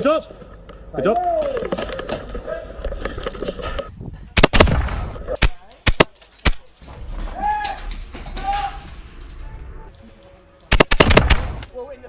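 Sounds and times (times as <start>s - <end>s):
airsoft guns firing: 4.4s - 6.6s, 10.7s - 11.7s.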